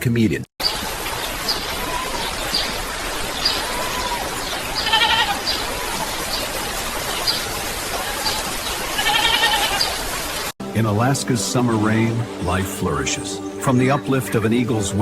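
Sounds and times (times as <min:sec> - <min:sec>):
rain hiss: 0:00.6 - 0:12.6
drawn-out animal calls: 0:01.6 - 0:10.0.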